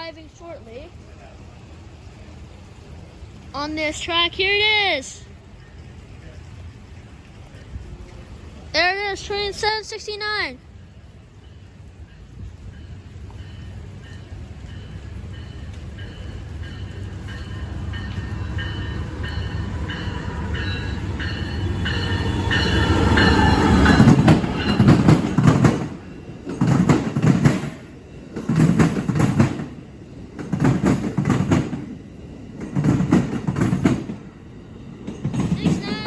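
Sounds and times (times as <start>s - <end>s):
train wheel noise: 0.0s - 36.0s
train braking: 7.4s - 36.0s
high ringing tones: 11.5s - 25.1s.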